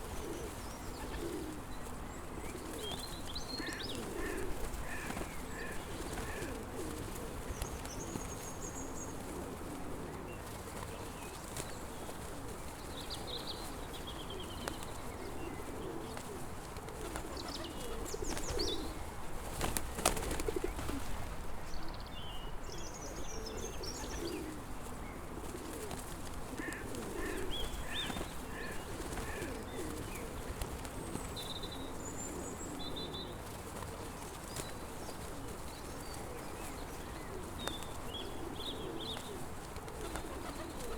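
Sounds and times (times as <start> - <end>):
small birds chirping: 0.0 - 9.3, 16.9 - 21.0, 21.7 - 40.9
pigeons cooing: 0.0 - 21.2, 23.1 - 40.9.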